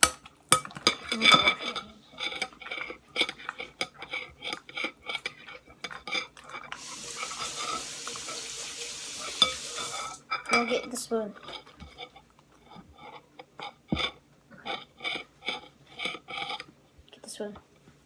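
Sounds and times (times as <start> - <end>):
steady hiss: 6.8 - 10.2.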